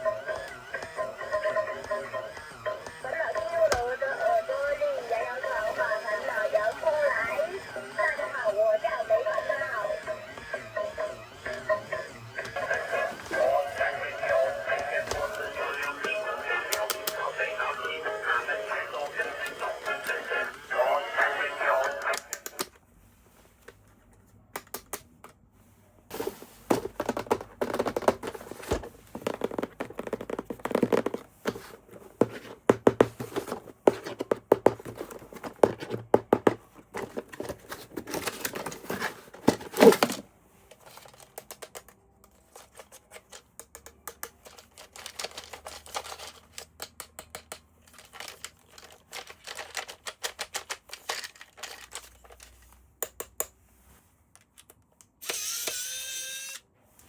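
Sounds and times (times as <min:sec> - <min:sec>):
plastic toy clicks and taps: 0:24.5 - 0:25.4, 0:41.1 - 0:42.0, 0:43.2 - 0:52.1, 0:53.0 - 0:53.6.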